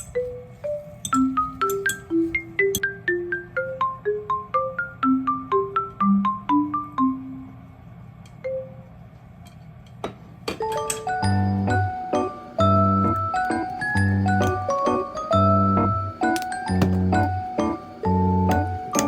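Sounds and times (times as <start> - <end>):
mallet melody: 0.0 - 7.5, 10.6 - 19.0
chords with low bass: 11.2 - 14.7, 15.3 - 18.8.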